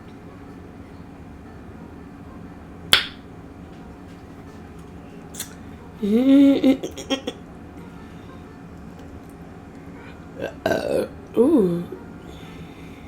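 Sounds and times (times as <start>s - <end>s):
loud burp: 10.4s - 11.1s.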